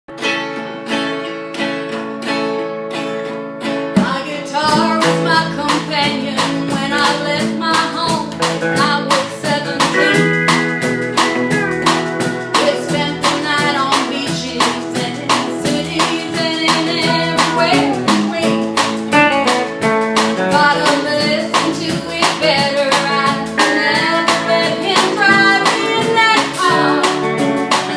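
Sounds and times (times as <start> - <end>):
guitar strumming: 0.1 - 27.9
live band playing: 0.1 - 27.9
steel guitar gliding: 8.7 - 14.8.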